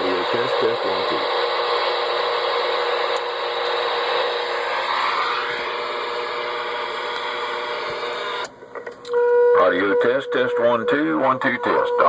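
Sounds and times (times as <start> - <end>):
radio static hissing: 0.0 - 8.4.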